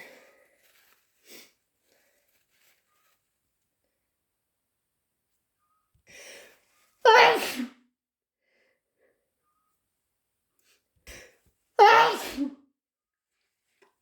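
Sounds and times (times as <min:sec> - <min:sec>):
person sneezing: 0:07.1 - 0:07.8, 0:11.8 - 0:12.5.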